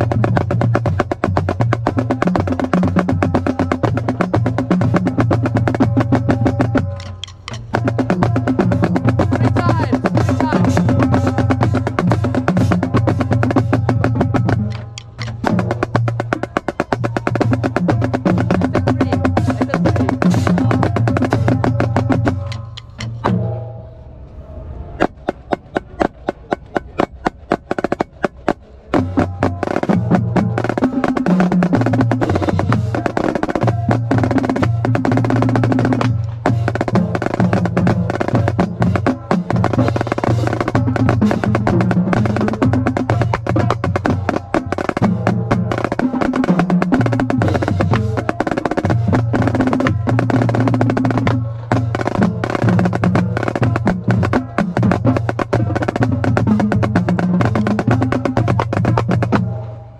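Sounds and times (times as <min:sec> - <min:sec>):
marching snare drums: 0:00.0 - 0:23.7, 0:25.0 - 0:59.9
lower pitched drums: 0:00.0 - 0:59.9
sharp clicks: 0:14.7 - 0:15.4.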